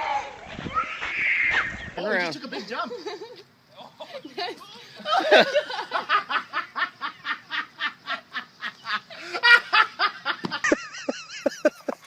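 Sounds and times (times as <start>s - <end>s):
person laughing hard: 5.0s - 12.0s.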